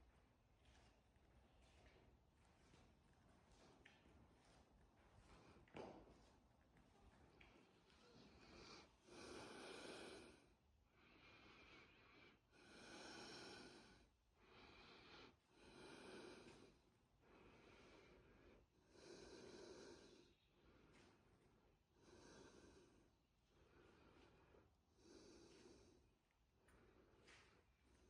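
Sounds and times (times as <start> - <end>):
person breathing close to microphone: 8.0 - 28.0.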